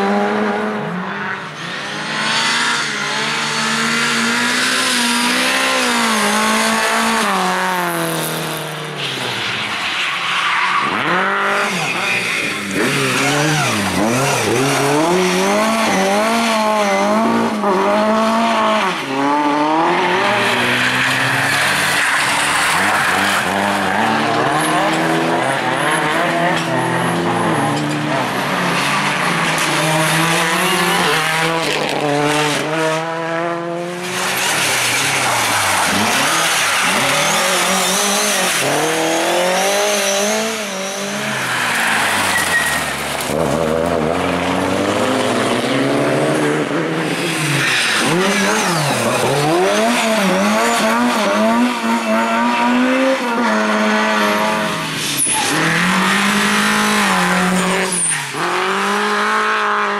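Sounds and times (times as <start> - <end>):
rally car engines revving: 0.0 - 59.9
tyre squeal and skidding: 8.6 - 17.6, 18.3 - 32.7, 34.0 - 44.7, 46.9 - 59.7.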